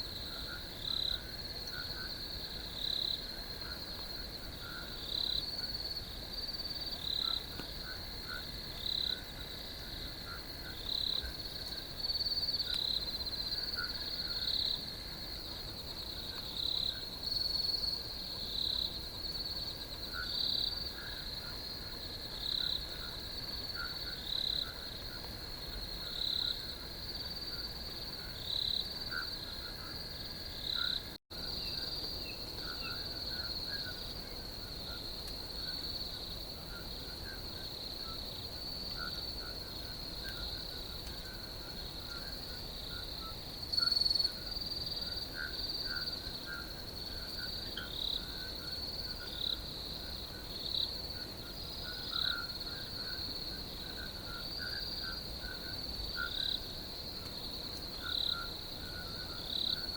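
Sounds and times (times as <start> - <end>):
crickets trilling: 0.0 - 59.9
frog calls: 51.8 - 56.6.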